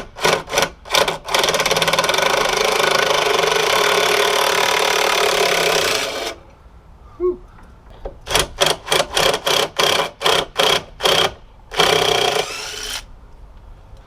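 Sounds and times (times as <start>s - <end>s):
cordless impact driver bursts: 8.3s - 13.1s.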